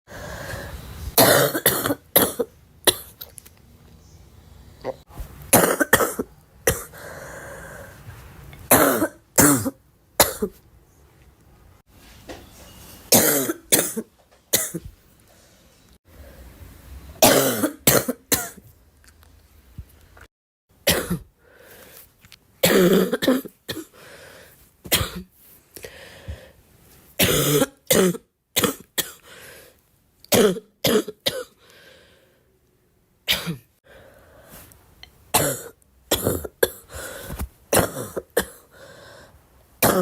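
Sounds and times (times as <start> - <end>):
girl coughing: 1.2 - 3.1, 5.6 - 7.0, 8.7 - 10.6, 20.9 - 21.3, 22.6 - 23.9, 35.4 - 36.9, 37.7 - 38.7.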